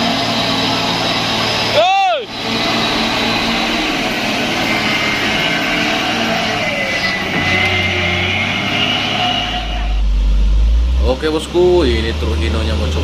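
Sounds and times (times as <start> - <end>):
heavy diesel truck engine under load: 0.0 - 13.0.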